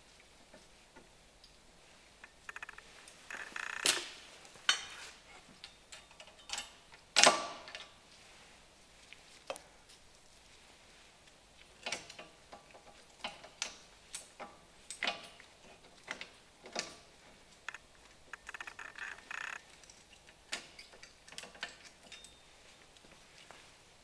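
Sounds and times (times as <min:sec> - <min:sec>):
metal tools clicking and clinking: 0:04.7 - 0:07.9, 0:18.5 - 0:22.5.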